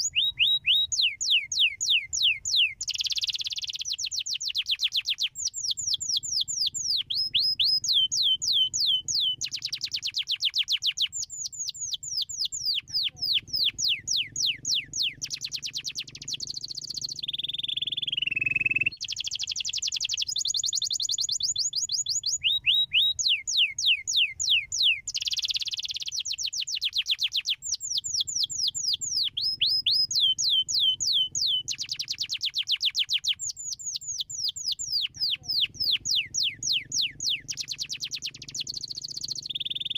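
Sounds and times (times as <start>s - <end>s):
canary singing trills: 0.0s - 39.9s.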